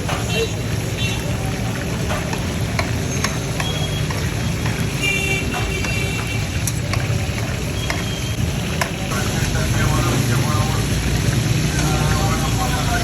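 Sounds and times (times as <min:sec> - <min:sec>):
low traffic rumble: 0:00.0 - 0:13.0.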